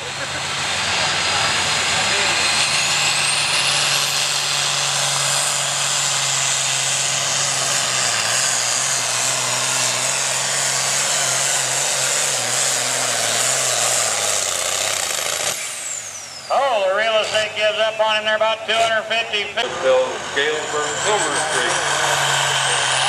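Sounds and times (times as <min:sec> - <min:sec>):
tractor diesel engine under load: 0:00.0 - 0:23.0
high whine: 0:15.6 - 0:23.0.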